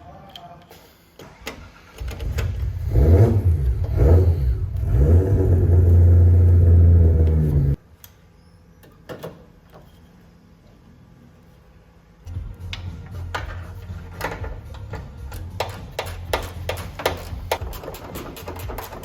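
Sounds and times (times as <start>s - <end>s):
engine revving: 2.2s - 7.8s.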